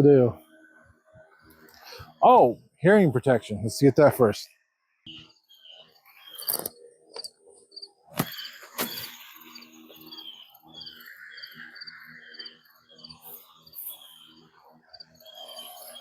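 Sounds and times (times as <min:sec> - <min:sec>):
birds chirping: 0:00.0 - 0:16.0
insects chirping: 0:05.1 - 0:16.0.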